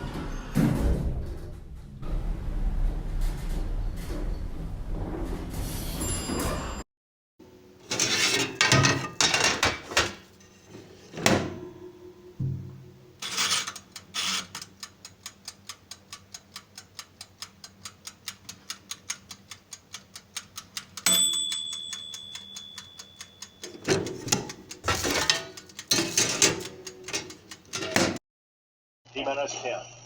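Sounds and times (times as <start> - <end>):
clockwork ticking: 13.2 - 28.0
bell ding: 21.1 - 23.4.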